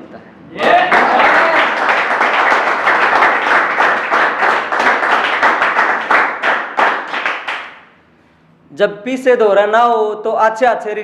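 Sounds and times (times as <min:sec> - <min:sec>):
audience clapping: 0:00.6 - 0:07.9.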